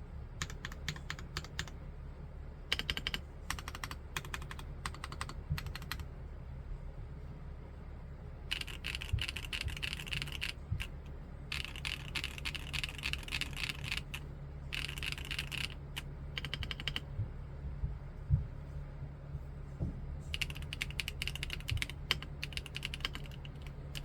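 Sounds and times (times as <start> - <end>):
mechanical keyboard keys clacking: 0.4 - 1.7, 2.7 - 6.1, 8.5 - 17.1, 20.3 - 24.0.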